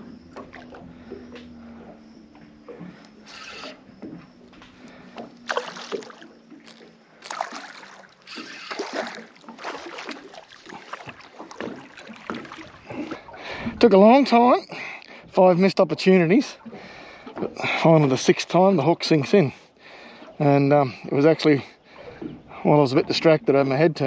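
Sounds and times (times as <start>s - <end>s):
steady low hum: 0.0s - 10.9s
water splashing: 0.0s - 24.0s
fishing reel noise: 3.0s - 3.9s, 4.8s - 10.2s.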